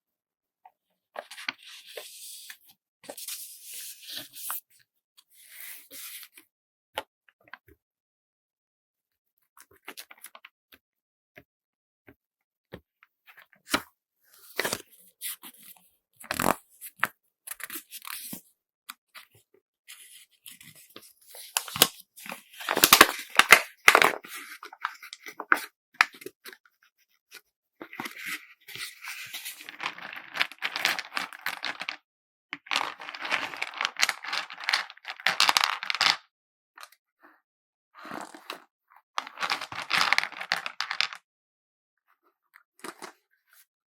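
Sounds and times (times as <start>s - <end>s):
packaging crinkling: 22.6s - 24.2s.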